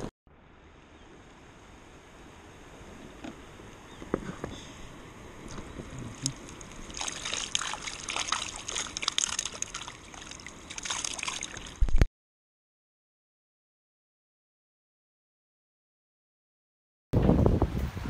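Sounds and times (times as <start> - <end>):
water splashing and trickling: 5.4 - 12.1.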